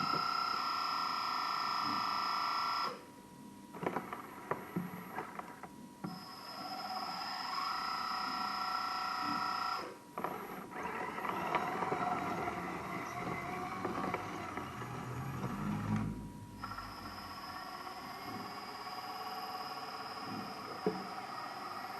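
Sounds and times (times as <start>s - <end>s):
pump motor whining: 6.1s - 21.9s.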